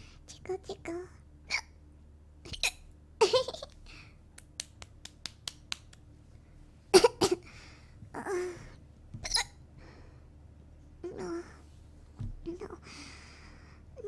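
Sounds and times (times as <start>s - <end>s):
woman hiccuping: 9.2s - 9.6s.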